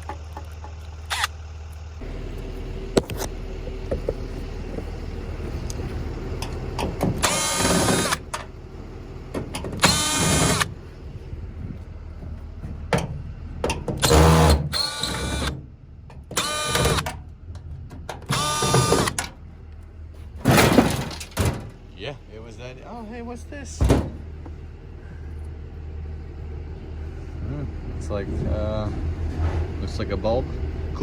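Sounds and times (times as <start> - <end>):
cordless drill whining: 2.1 - 8.5, 9.8 - 10.7, 14.0 - 15.5, 16.4 - 17.1, 18.3 - 19.2
heavy low thump: 23.8 - 24.6.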